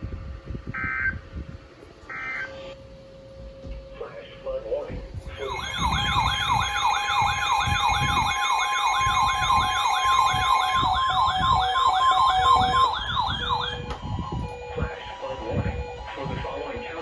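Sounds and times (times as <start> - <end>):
electronic siren alarm yelping: 5.3 - 16.1.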